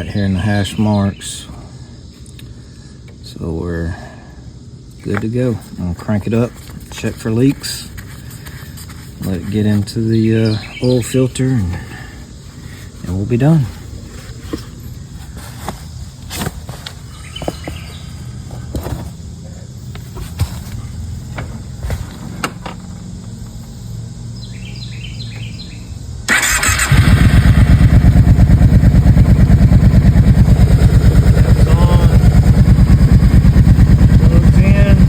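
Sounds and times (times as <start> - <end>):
atv engine idling: 9.2 - 13.8, 17.1 - 20.1, 20.8 - 35.0
bird chirps: 9.3 - 12.1, 17.0 - 18.7, 23.7 - 26.1
engine starter cranking: 26.3 - 31.6.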